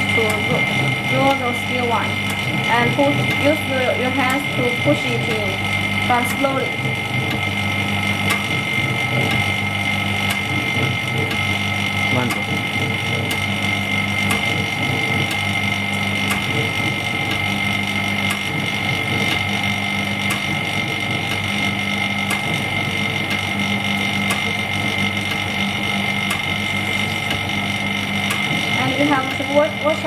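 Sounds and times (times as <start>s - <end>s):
faint ticking: 0.0s - 30.0s
low hum: 0.0s - 30.0s
machine high whine: 0.0s - 30.0s.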